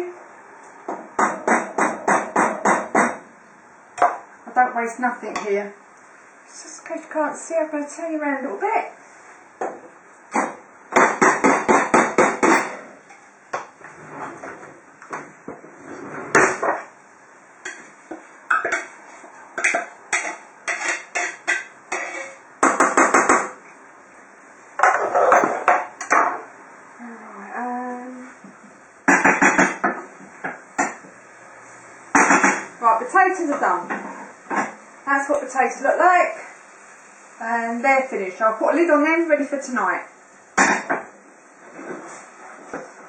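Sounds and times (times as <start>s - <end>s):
metal utensil scraping cooking pan: 12.4s - 13.4s, 17.6s - 22.4s.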